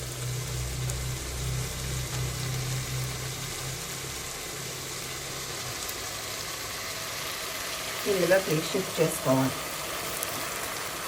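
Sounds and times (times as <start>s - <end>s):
low hum: 0.0s - 7.3s
food hissing in a pot: 0.0s - 11.0s.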